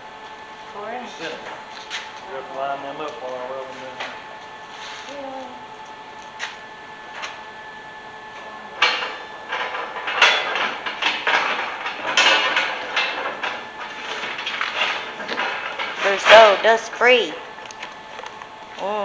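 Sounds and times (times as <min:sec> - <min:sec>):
metal pieces clattering: 0:08.8 - 0:17.3.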